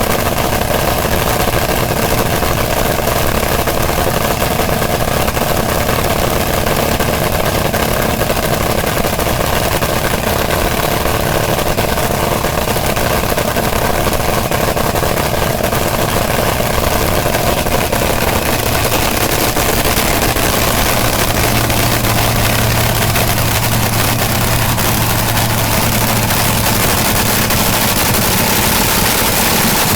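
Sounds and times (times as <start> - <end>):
engine idling loudly: 0.0 - 29.9
deep low hum: 15.9 - 29.9.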